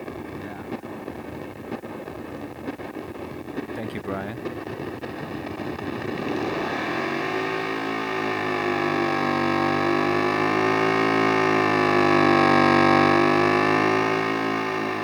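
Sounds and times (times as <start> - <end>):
acoustic guitar delay drone: 6.2 - 15.0.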